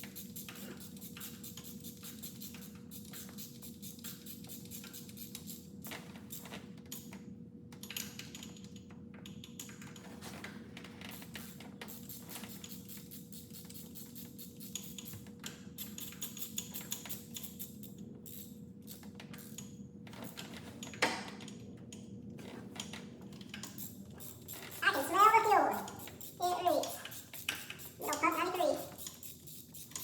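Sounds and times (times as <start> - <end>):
hand tools clicking: 25.9 - 30.0.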